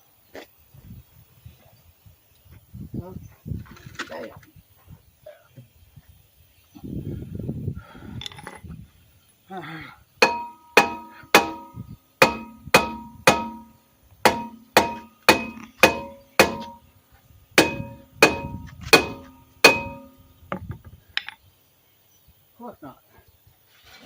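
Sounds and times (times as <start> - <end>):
hammer striking metal drum: 10.2 - 16.8, 17.6 - 20.2.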